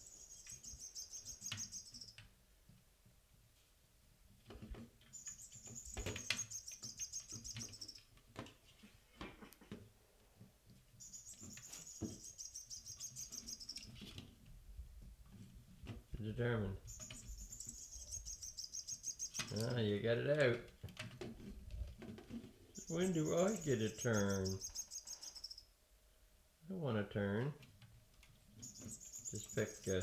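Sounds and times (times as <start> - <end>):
toy bird chirping: 16.9 - 19.6, 22.8 - 25.6, 28.6 - 30.0.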